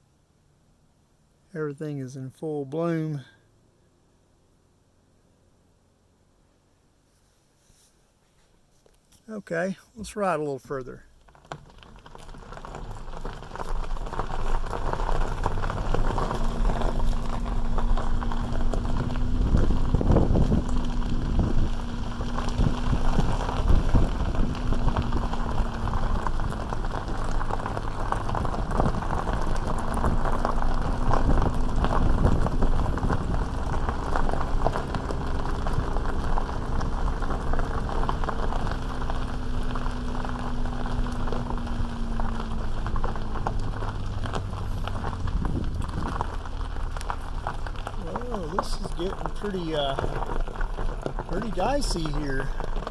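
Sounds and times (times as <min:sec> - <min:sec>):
engine hum: 0:00.0 - 0:52.9
tyres crunching on gravel: 0:08.3 - 0:52.9
vehicle knocks and jolts: 0:11.2 - 0:52.9.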